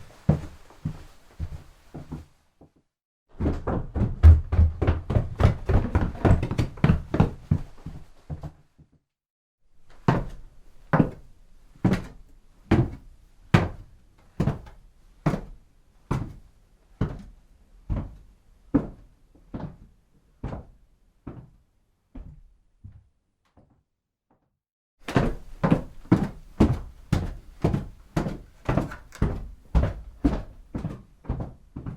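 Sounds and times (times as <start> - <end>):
heavy footsteps walking: 0.0 - 2.8, 25.0 - 31.9.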